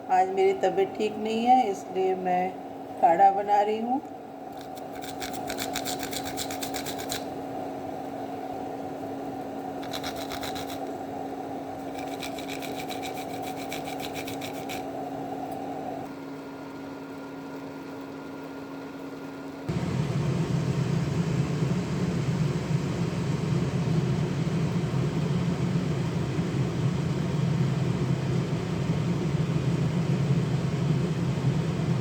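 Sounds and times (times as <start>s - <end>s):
steady low hum: 0.0s - 32.0s
rhythmic rasping strokes: 11.8s - 14.9s.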